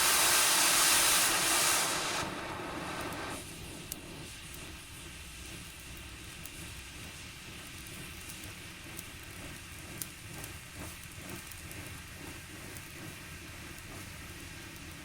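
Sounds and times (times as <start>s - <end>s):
sharp firework crack: 0.0s - 3.4s
fireworks crackling: 0.0s - 3.6s.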